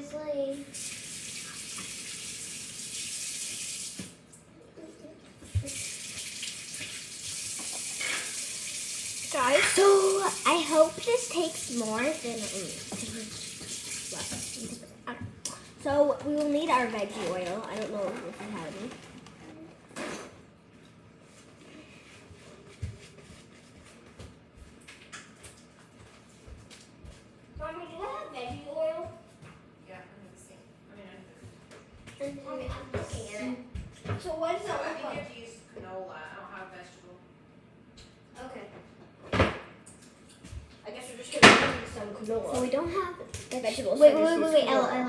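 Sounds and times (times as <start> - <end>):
tap running into a sink: 0.8 - 4.2, 5.4 - 14.8.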